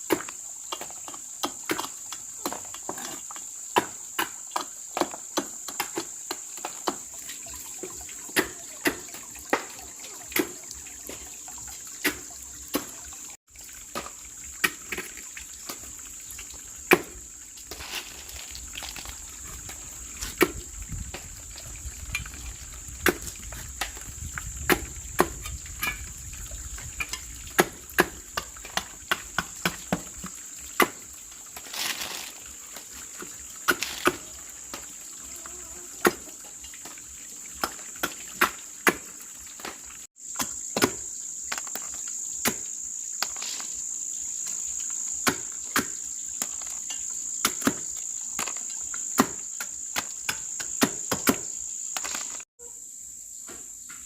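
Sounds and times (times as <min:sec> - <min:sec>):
high-pitched insect drone: 0:40.6 - 0:53.4.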